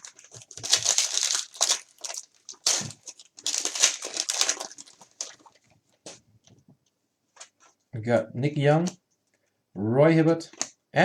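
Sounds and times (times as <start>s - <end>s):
foil wrapper tearing and crinkling: 0.0s - 5.6s.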